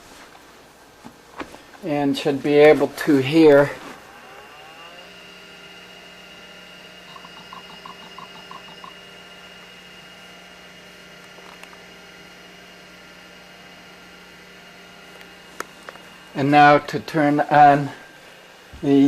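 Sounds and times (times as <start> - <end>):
hard drive humming with high whine: 0.4 - 19.0
quick even ticks: 7.1 - 9.0.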